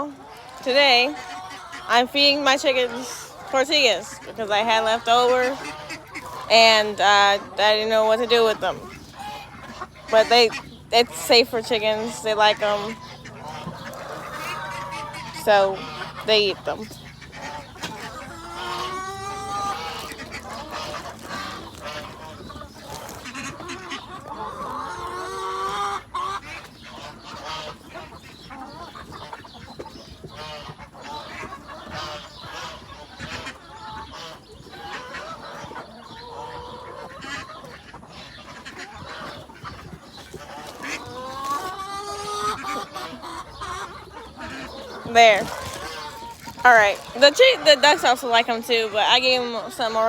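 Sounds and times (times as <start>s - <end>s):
chickens clucking: 0.0s - 50.0s
chickens squawking: 0.0s - 50.0s.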